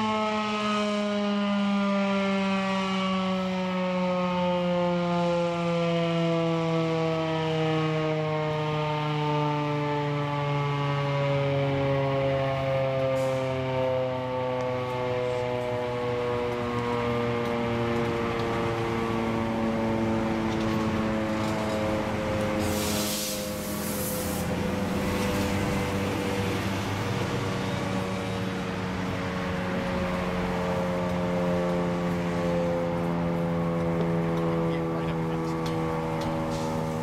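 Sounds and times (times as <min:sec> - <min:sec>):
warning siren single tone: 0:00.0 - 0:37.0
brief hiss: 0:22.7 - 0:24.5.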